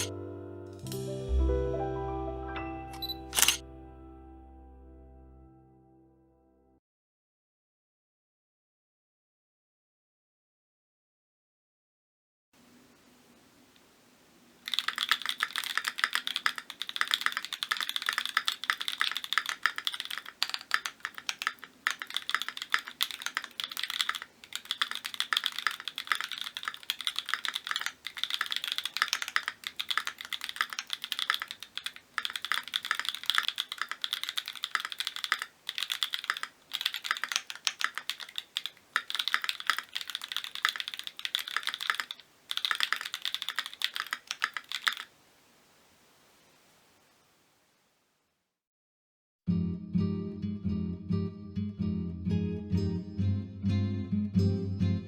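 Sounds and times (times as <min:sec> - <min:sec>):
fast mechanical keyboard typing: 0:14.6 - 0:45.1.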